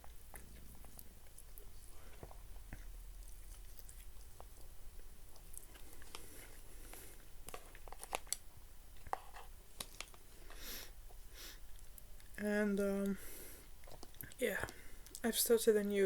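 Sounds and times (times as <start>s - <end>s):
chewing noodles: 0.0s - 9.2s, 13.5s - 15.3s.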